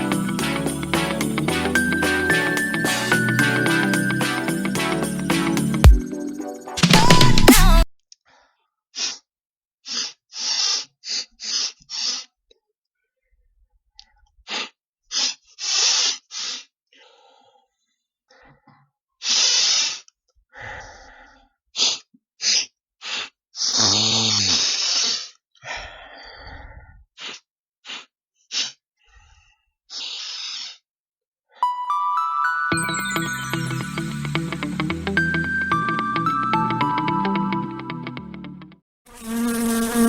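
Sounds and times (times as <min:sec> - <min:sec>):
person sniffing: 0:09.0 - 0:12.3, 0:14.5 - 0:17.5, 0:20.6 - 0:26.6, 0:27.2 - 0:29.3, 0:29.9 - 0:30.8.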